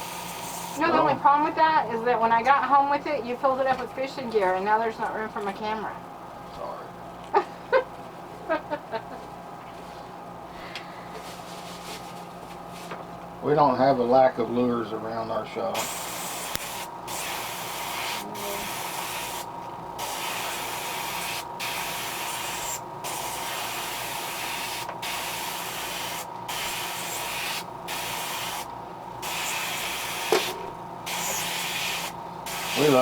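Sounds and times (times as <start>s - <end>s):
airbrush spraying hiss: 15.8s - 33.0s.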